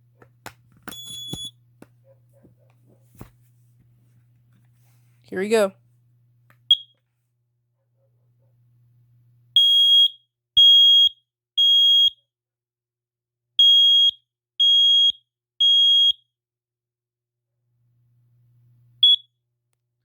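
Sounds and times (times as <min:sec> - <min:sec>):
smoke alarm beeping: 0:00.9 - 0:01.6, 0:06.7 - 0:07.0, 0:09.6 - 0:12.2, 0:13.6 - 0:16.2, 0:19.0 - 0:19.3.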